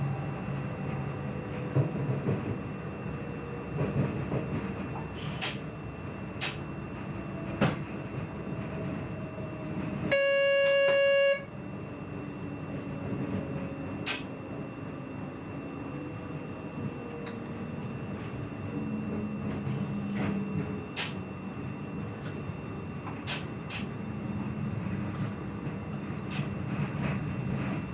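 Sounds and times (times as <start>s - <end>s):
train running at speed: 0.0s - 27.9s
single-pitched signal tone: 10.0s - 11.6s.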